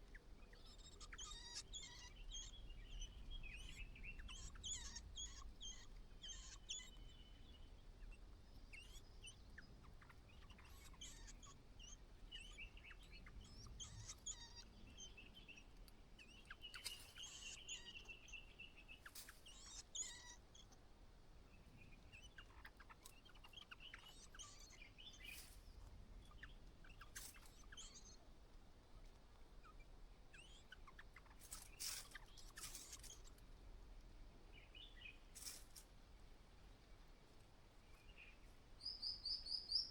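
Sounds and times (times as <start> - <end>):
birds chirping and calling: 16.4 - 18.2.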